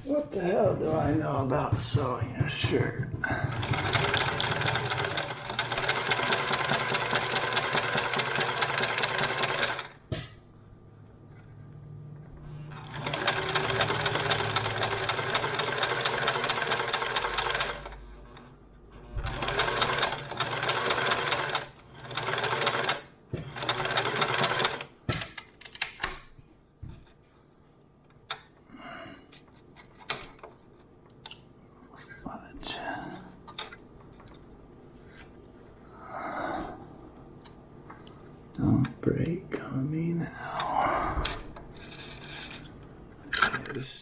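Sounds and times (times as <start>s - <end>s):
sewing machine stitching: 3.2s - 10.0s, 12.5s - 18.5s, 19.1s - 26.0s.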